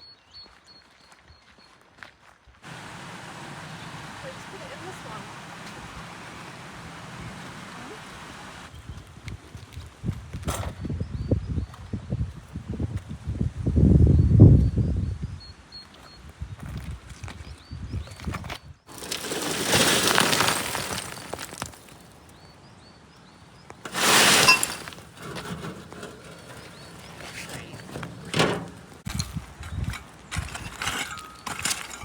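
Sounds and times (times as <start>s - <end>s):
crashing and breaking: 18.9s - 22.2s, 23.8s - 32.0s.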